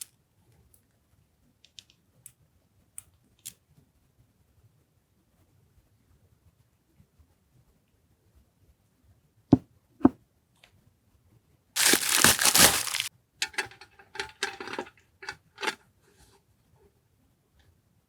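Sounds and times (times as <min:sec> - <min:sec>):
packaging tearing: 0:11.8 - 0:13.1
wrapper crinkling: 0:11.8 - 0:13.1.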